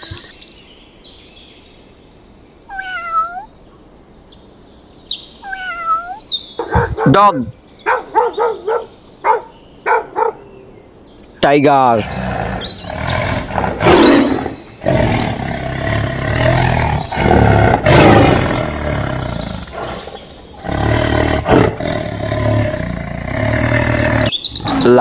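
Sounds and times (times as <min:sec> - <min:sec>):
tiger roaring and growling: 0:06.6 - 0:10.4, 0:11.8 - 0:25.0.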